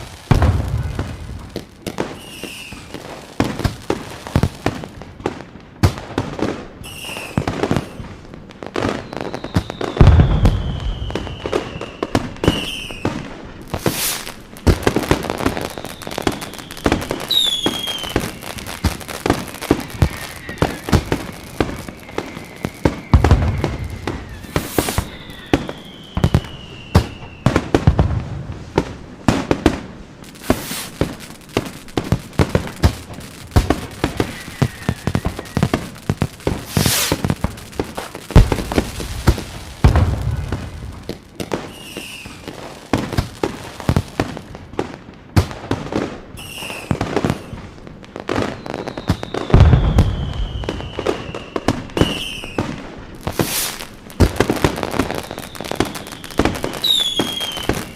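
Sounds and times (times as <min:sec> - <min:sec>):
falling firework whistles: 0:00.0 - 0:05.4, 0:06.2 - 0:44.8, 0:45.9 - 0:57.9
deep firework booms: 0:00.0 - 0:06.6, 0:08.8 - 0:46.1, 0:48.3 - 0:57.9
fireworks cracking and popping: 0:00.0 - 0:57.9.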